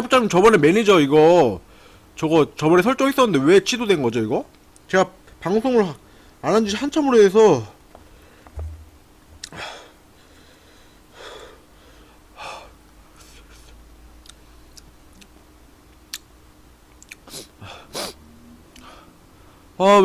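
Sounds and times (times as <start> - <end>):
man breathing hard: 6.0 - 6.4, 9.4 - 13.8, 17.3 - 18.2, 18.8 - 19.7.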